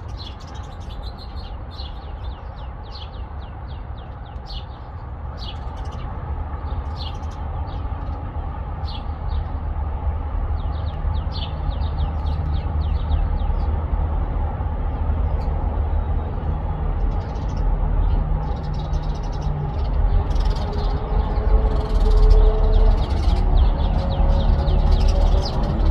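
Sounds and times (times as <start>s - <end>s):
small birds chirping: 0.0s - 9.6s, 10.6s - 13.9s, 14.8s - 25.9s
steady low rumble: 6.1s - 25.9s.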